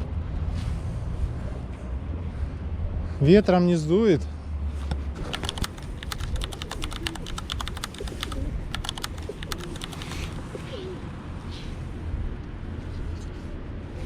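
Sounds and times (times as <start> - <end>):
rapid sharp clicks: 5.2 - 10.2.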